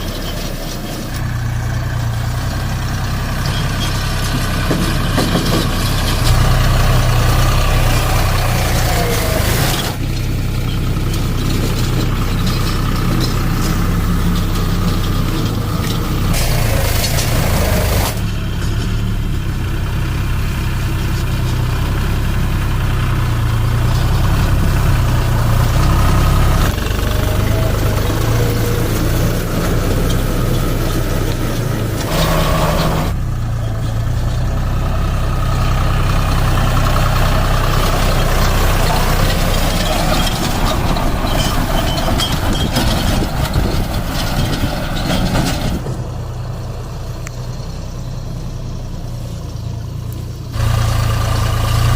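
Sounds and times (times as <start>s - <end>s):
tractor diesel engine running: 0.0s - 51.9s
loud noisy burst: 16.4s - 18.2s.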